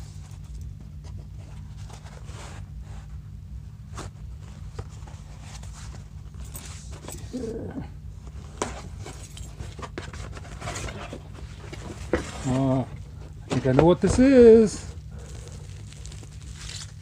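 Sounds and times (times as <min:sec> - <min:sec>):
steady low hum: 0:00.0 - 0:17.0
packaging rustling and crinkling: 0:08.3 - 0:17.0.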